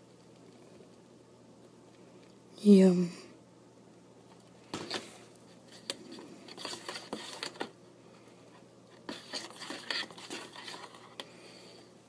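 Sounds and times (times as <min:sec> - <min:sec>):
rustling of handled objects: 0:04.2 - 0:11.9.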